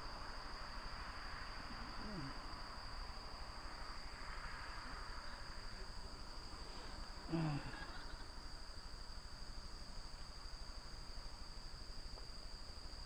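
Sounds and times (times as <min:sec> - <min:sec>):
crickets trilling: 0:00.0 - 0:13.0
rapid cricket chirping: 0:00.0 - 0:13.0.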